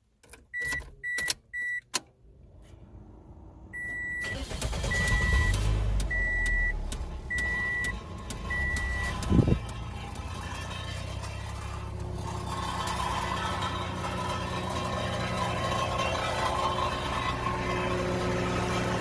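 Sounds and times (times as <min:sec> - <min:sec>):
car engine rumbling: 0:00.0 - 0:19.0
car warning chime beeps: 0:00.5 - 0:02.0, 0:03.8 - 0:09.8.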